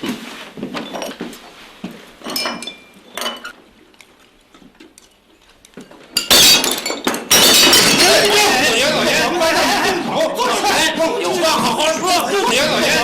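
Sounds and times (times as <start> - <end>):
dishes and chopsticks clinking: 2.2 - 3.6
crockery crashing: 6.2 - 8.9.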